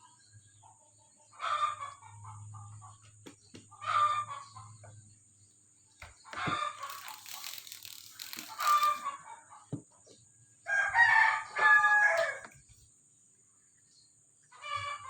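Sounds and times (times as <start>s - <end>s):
chickens calling: 6.0s - 9.4s
rooster crowing: 10.6s - 12.5s.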